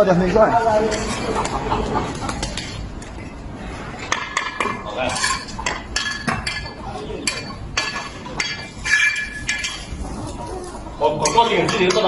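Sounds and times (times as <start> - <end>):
hard objects clinking and clattering: 4.1 - 10.0.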